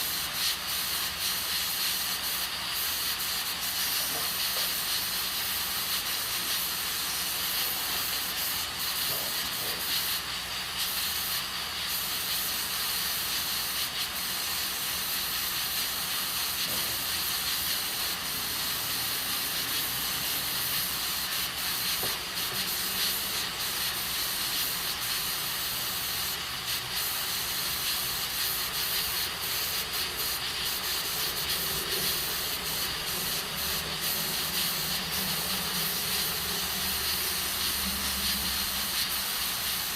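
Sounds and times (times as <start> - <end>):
pressure cooker hissing: 0.0 - 39.9.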